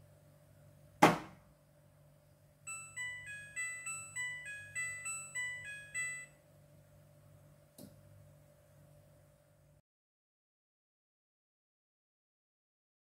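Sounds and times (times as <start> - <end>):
faint steady hum: 0.0 - 9.8
washing machine chime melody: 2.6 - 6.5
small click: 7.8 - 8.0.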